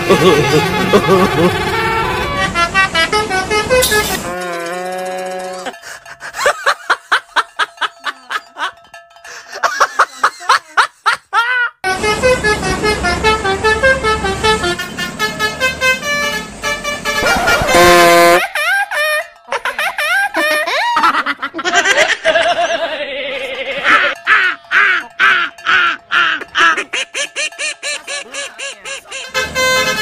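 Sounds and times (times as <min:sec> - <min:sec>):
multi-tone horn chord: 0:00.0 - 0:05.6, 0:11.8 - 0:18.4, 0:29.2 - 0:30.0
musical bus horn: 0:00.0 - 0:06.0, 0:11.8 - 0:19.2, 0:28.8 - 0:30.0.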